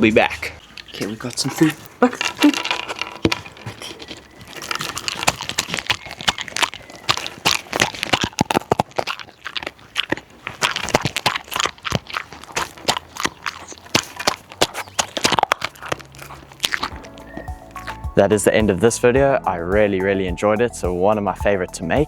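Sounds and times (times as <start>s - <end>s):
dog chewing crunchy treats: 0.6s - 18.2s.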